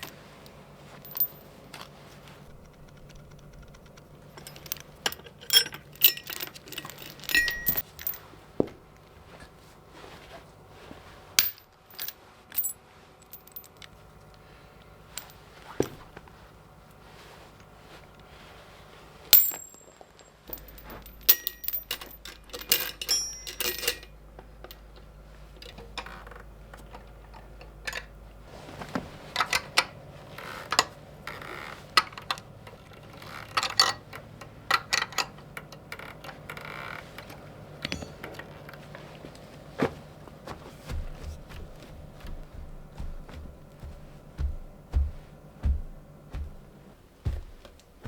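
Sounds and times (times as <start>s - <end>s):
metal clinks on anvil: 4.4s - 8.1s, 19.4s - 24.1s, 37.8s - 38.4s.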